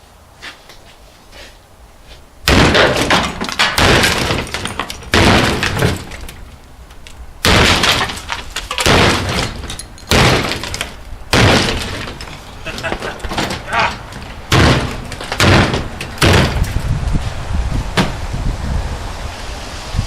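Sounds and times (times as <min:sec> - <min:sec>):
metal parts clattering and rattling: 0:02.6 - 0:16.9.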